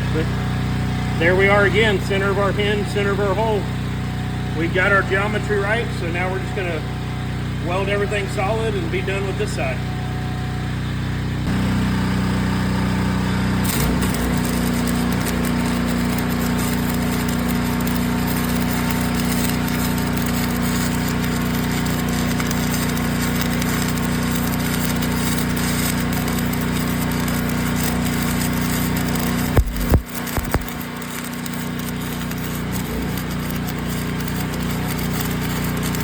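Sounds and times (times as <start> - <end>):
welder engine running: 0.0 - 36.0
welding arc crackling: 11.4 - 36.0.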